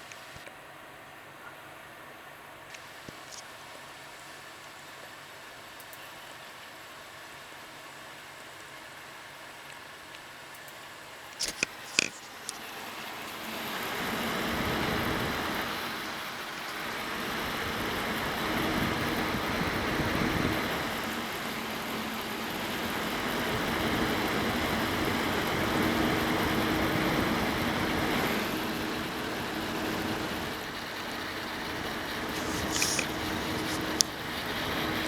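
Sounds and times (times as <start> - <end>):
coil whine: 11.0 - 35.0
computer fan rushing: 11.4 - 35.0.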